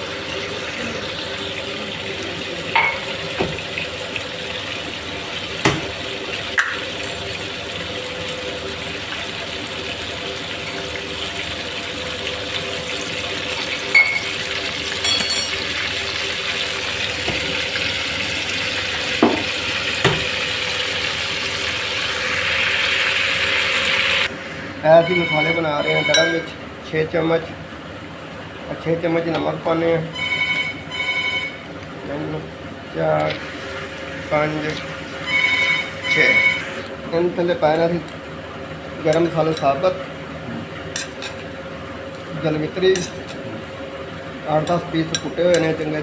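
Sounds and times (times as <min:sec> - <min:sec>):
metal utensil clanking on pot: 0:15.0 - 0:15.7
paste sizzling in hot oil: 0:15.6 - 0:24.3.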